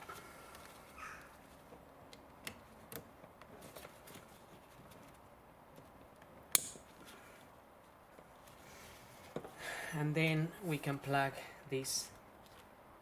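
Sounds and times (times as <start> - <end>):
rustling of wiring: 0.0 - 9.6
connector snapping in: 6.5 - 6.8.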